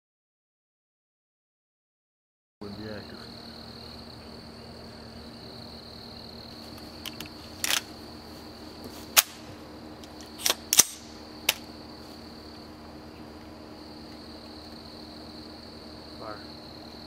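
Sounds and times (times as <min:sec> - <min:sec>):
sharp cracks: 0:06.7 - 0:08.0, 0:09.1 - 0:11.7.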